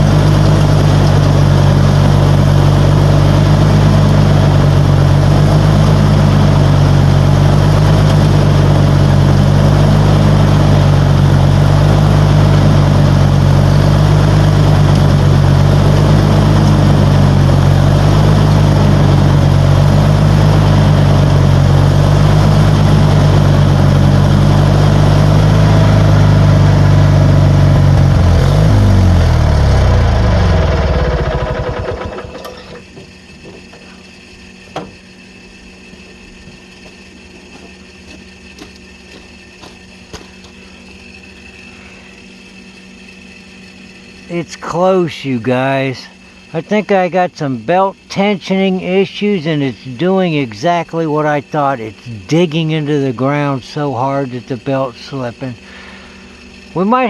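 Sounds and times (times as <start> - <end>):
riding lawnmower engine running: 0.0 - 57.0.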